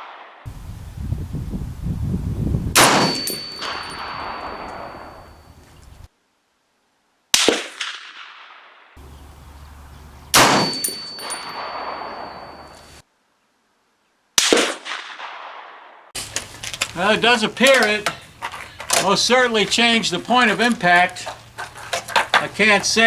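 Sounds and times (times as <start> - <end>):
rifle shots with echo: 2.8 - 5.4, 10.3 - 12.8.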